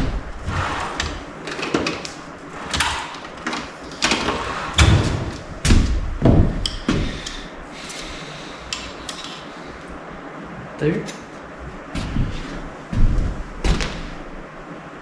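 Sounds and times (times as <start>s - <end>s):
heavy thuds: 4.8s - 7.2s, 11.8s - 14.3s.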